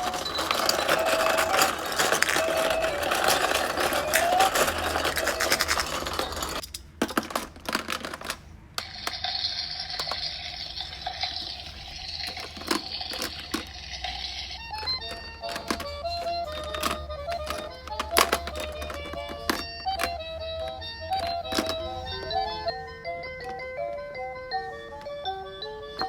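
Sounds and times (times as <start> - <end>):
music: 0.0 - 6.6, 14.1 - 26.0
small plastic pieces clicking: 0.0 - 22.2.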